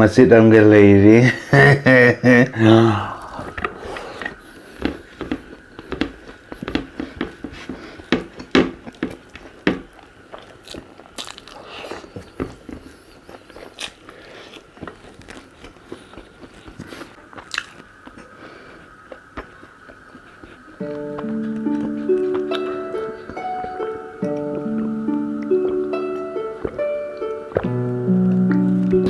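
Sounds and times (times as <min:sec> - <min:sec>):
faint steady whine: 0:00.0 - 0:29.0
person chewing: 0:02.9 - 0:29.0
crunchy bites: 0:03.2 - 0:24.5
lip smacks: 0:03.2 - 0:24.5.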